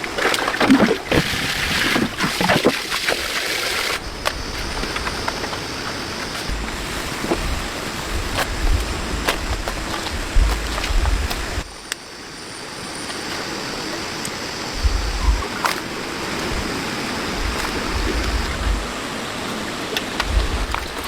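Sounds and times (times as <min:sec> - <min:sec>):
steady rushing noise: 0:04.0 - 0:12.0, 0:14.3 - 0:21.0
wind buffeting microphone: 0:06.4 - 0:11.8, 0:14.7 - 0:21.0.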